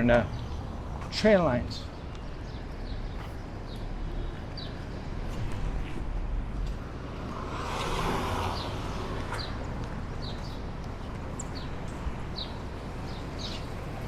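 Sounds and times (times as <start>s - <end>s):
small birds chirping: 0.0s - 6.5s, 7.2s - 14.0s
city street traffic rumble: 0.0s - 14.0s
vehicle passing: 3.1s - 10.6s.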